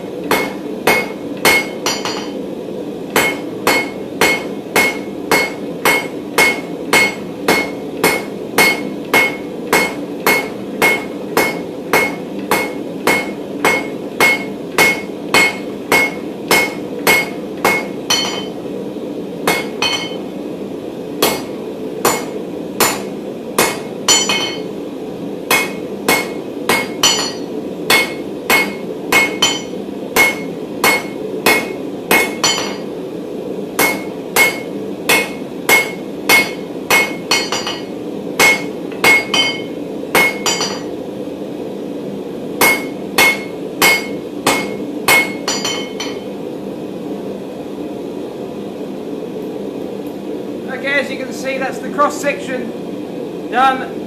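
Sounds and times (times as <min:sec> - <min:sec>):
hammer striking steel on anvil: 0:00.2 - 0:02.4, 0:03.1 - 0:18.6, 0:19.4 - 0:20.2, 0:21.2 - 0:24.7, 0:25.5 - 0:32.9, 0:33.8 - 0:41.0, 0:42.6 - 0:46.3.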